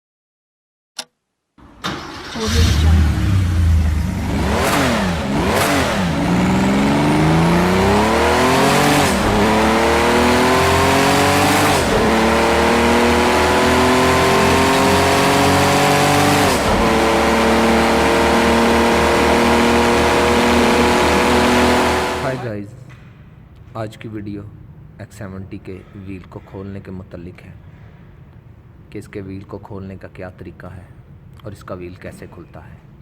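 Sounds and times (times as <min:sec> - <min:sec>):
car engine revving and accelerating: 0:02.5 - 0:22.5.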